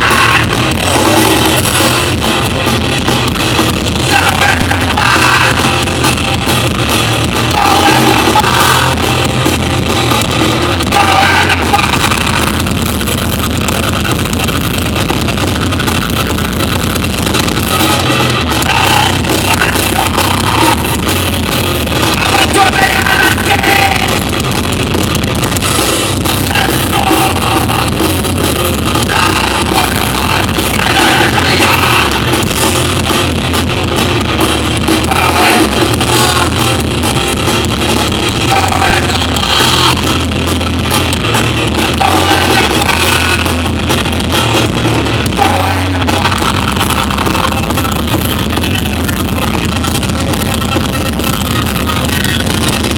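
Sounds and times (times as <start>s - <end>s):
live rock band playing: 0.0s - 52.9s
person singing: 4.0s - 5.9s, 7.5s - 9.3s, 10.8s - 12.7s, 18.4s - 21.0s, 22.0s - 24.2s, 26.4s - 28.0s, 29.0s - 32.4s, 35.0s - 36.8s, 38.3s - 40.2s, 41.7s - 43.7s, 45.2s - 49.0s.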